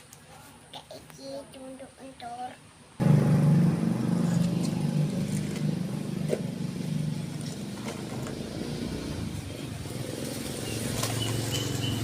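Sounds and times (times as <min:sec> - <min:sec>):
engine running with low hum: 0:03.0 - 0:12.0.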